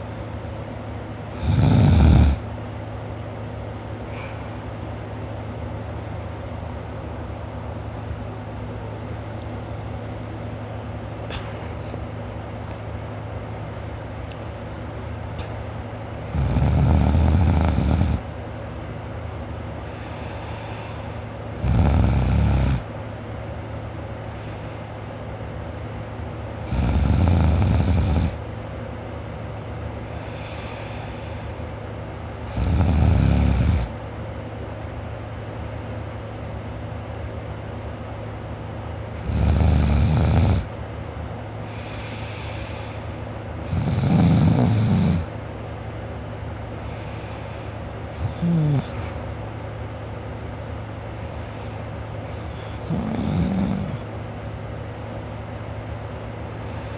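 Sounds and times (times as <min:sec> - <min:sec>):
steady low hum: 0:00.0 - 0:56.9
person snoring: 0:01.4 - 0:02.4, 0:16.3 - 0:18.3, 0:19.9 - 0:22.9, 0:26.6 - 0:28.4, 0:32.5 - 0:33.9, 0:39.2 - 0:40.7, 0:43.6 - 0:45.3, 0:48.2 - 0:49.2, 0:52.4 - 0:54.1.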